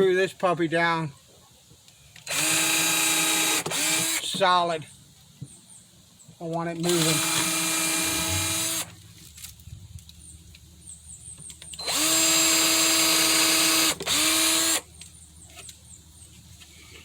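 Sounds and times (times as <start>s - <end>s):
power drill whining: 2.2s - 4.4s, 6.8s - 9.0s, 11.7s - 14.8s.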